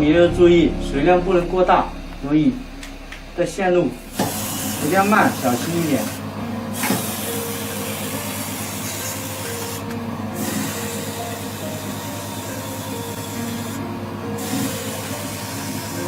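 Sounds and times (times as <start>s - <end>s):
machine running hum: 0.0s - 16.0s
steam spray hissing: 6.8s - 9.8s, 14.4s - 16.0s.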